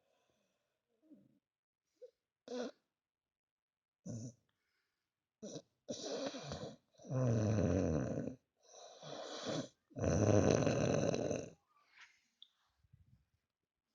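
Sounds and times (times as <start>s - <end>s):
person snoring heavily: 9.0s - 11.5s.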